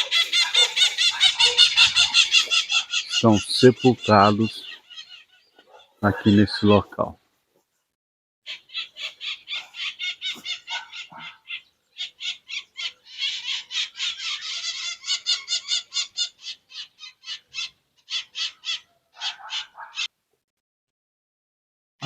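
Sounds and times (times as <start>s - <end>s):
bird calling harsh high notes: 0.0s - 5.6s.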